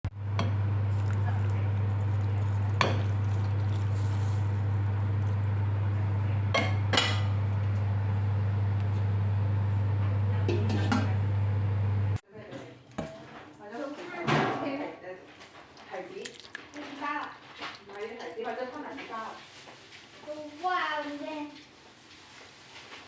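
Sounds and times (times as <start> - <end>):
steady low hum: 0.1 - 12.2.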